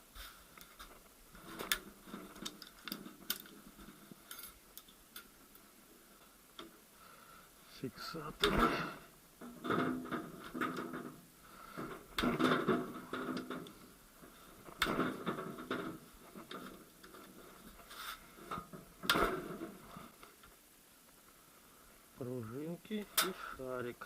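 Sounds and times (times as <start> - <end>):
metal parts clinking and clanking: 4.2 - 5.3.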